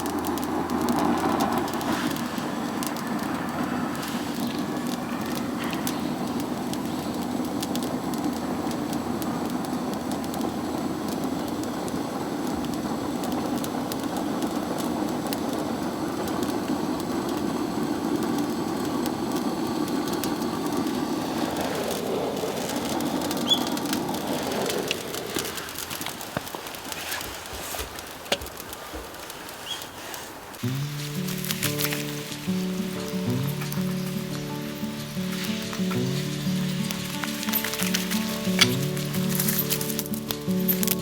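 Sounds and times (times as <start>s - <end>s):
fire crackling: 0.0s - 41.0s
fire roaring in a can: 0.0s - 41.0s
sharp pop of burning bamboo: 30.6s - 41.0s.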